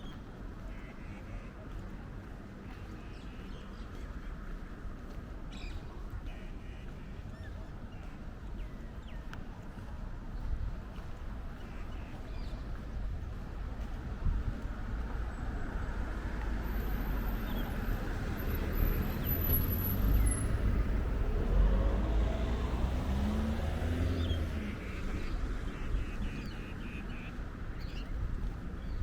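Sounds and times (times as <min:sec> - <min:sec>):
vehicle passing: 0:16.9 - 0:26.4.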